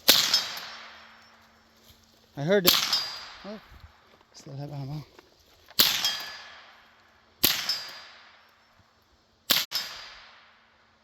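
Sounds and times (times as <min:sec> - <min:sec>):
rifle shots echoing: 0:00.0 - 0:01.2, 0:02.6 - 0:04.0, 0:05.8 - 0:08.4, 0:09.5 - 0:10.7
faint ringing tone: 0:08.3 - 0:09.1.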